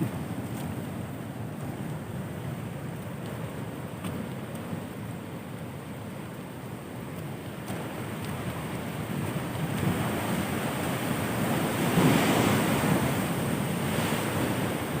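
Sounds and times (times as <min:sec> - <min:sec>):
ocean waves crashing on beach: 0:00.0 - 0:15.0
wind on microphone: 0:07.6 - 0:15.0.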